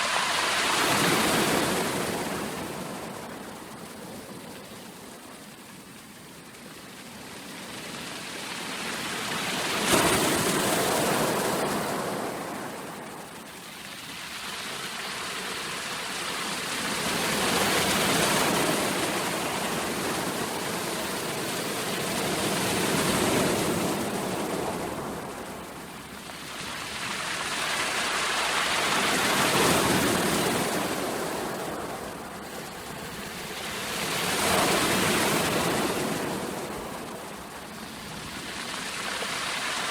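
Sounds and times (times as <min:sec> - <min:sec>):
sea waves washing ashore: 0:00.0 - 0:04.4, 0:14.2 - 0:39.9.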